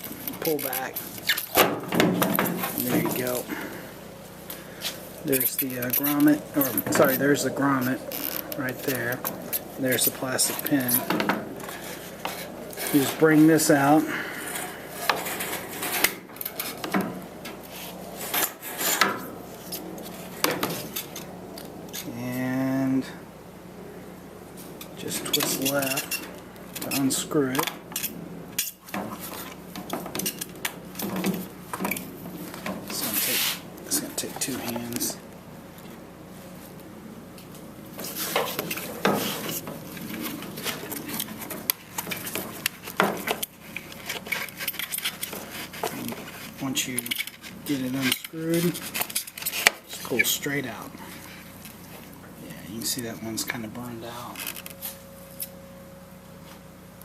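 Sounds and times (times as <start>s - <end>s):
hard plastic rubbing and scraping: 14.4s - 22.1s, 38.0s - 52.1s.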